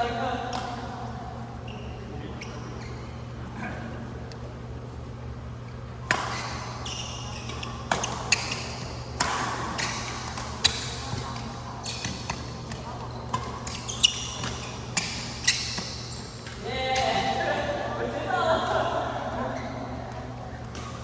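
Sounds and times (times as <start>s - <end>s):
shoes squeaking on floor: 1.7s - 3.2s, 6.3s - 9.2s, 9.8s - 16.6s
racket hitting shuttlecock: 6.0s - 17.3s.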